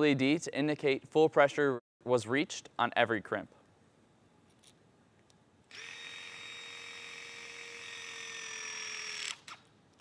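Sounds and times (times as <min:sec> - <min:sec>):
hydraulic pump whine: 0:05.7 - 0:09.4.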